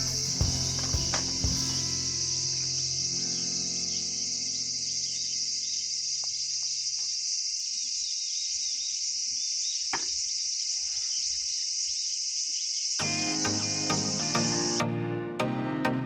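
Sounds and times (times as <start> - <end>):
insects chirring: 0.0 - 14.8.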